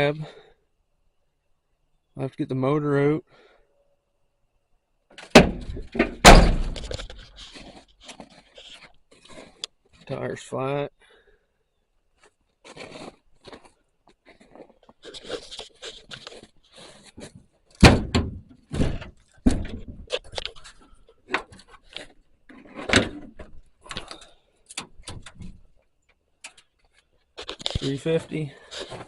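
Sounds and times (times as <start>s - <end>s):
knocks clunks and scrapes: 5.2s - 10.2s, 12.2s - 25.8s, 26.5s - 29.0s.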